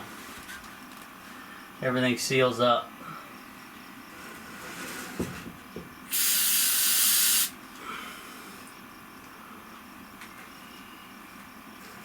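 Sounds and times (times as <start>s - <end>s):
aerosol can spraying hiss: 6.1s - 7.6s.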